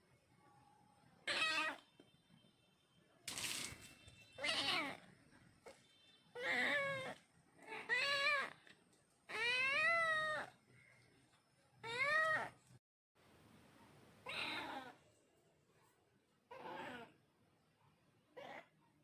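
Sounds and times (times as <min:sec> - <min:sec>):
cat meowing: 0:01.2 - 0:01.8, 0:04.4 - 0:05.0, 0:06.4 - 0:08.6, 0:14.2 - 0:15.0, 0:16.5 - 0:17.2.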